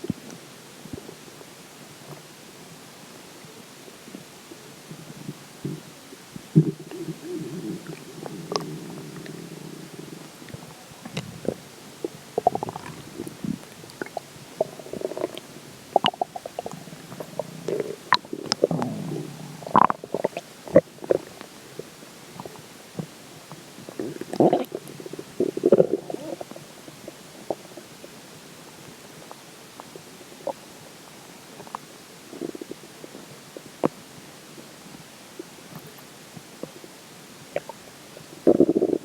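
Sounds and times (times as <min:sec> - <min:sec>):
stomach gurgling and growling: 0:04.9 - 0:23.1, 0:23.8 - 0:28.2, 0:31.6 - 0:34.0, 0:37.5 - 0:39.0.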